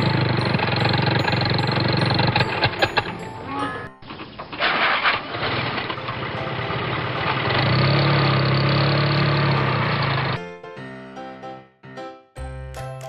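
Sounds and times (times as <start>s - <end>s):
vehicle engine starting and running: 0.0s - 10.4s.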